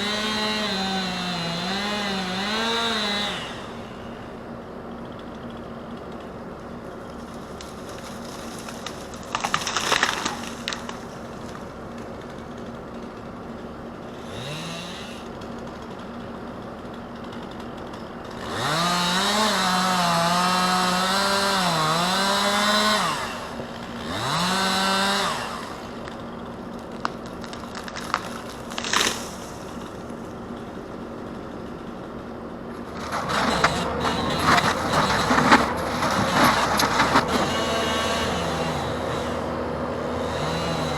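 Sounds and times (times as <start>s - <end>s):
chainsaw revving and cutting: 0.0s - 4.4s, 7.6s - 11.6s, 14.0s - 32.0s, 32.8s - 40.9s
clattering crackling noise: 7.1s - 12.1s, 26.9s - 29.9s, 33.0s - 37.5s.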